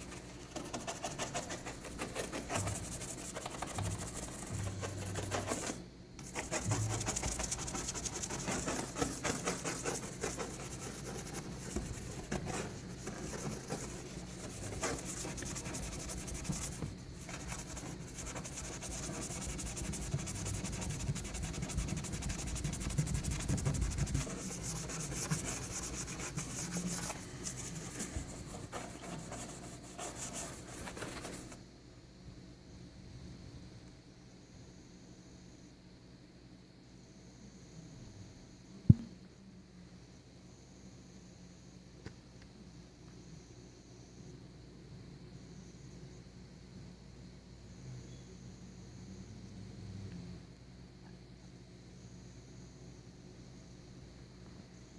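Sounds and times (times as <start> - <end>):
rubbing on car paint: 0.0 - 31.6.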